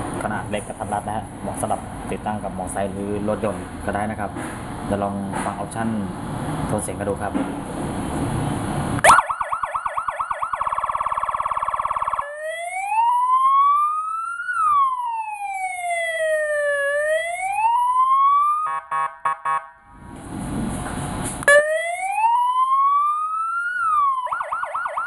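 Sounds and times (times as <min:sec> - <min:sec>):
electronic siren: 0:09.0 - 0:20.1, 0:21.4 - 0:25.0.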